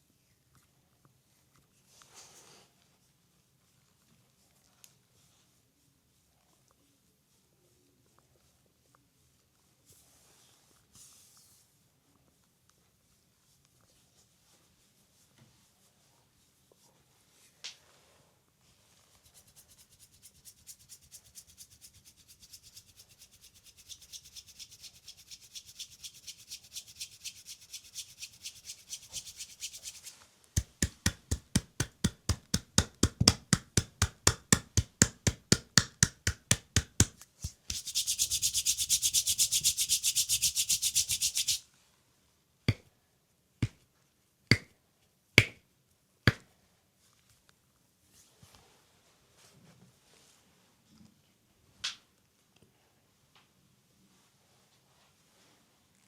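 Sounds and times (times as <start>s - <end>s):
hands rubbing skin: 19.2s - 41.6s
hands slapping skin: 21.0s - 41.6s, 44.5s - 44.7s, 45.4s - 45.6s.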